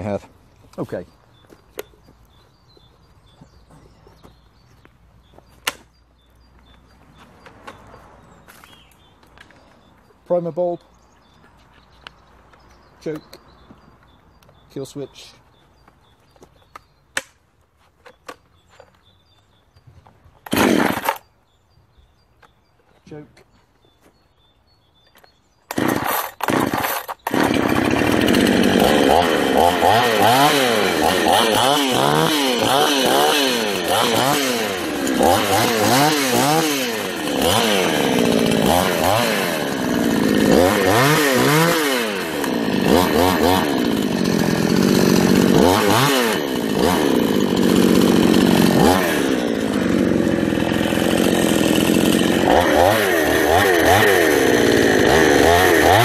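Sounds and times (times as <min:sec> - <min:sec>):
chainsaw starting and revving: 0:20.4 - 0:21.3, 0:25.6 - 0:56.0.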